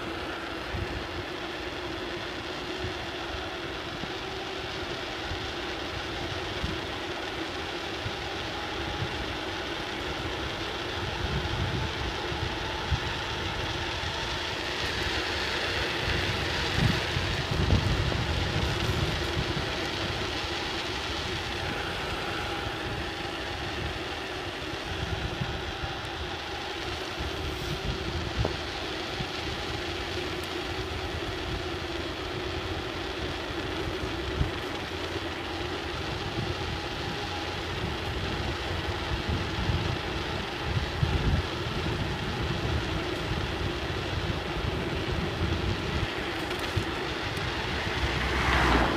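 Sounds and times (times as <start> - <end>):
bicycle tyre noise: 0.0 - 48.9
bike rattling: 0.0 - 48.9
wind buffeting microphone: 10.1 - 48.9.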